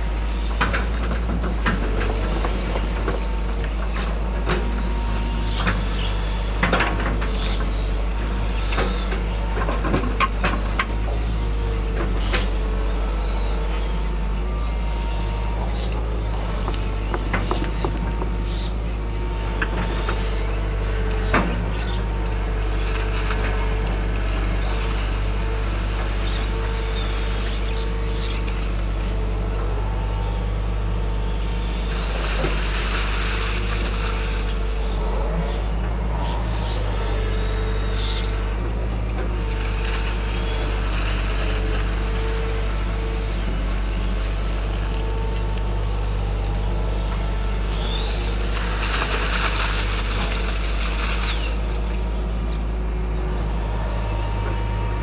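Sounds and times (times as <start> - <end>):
excavator diesel engine running: 0.0 - 55.0
hydraulic whine: 0.0 - 55.0.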